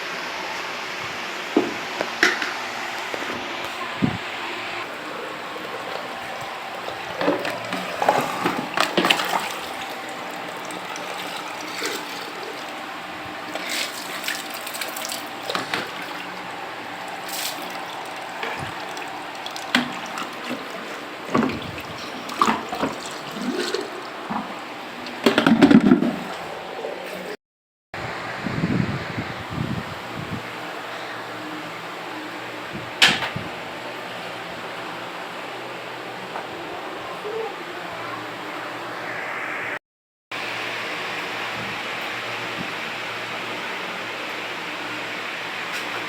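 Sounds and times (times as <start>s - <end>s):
water running and splashing: 4.8s - 27.3s.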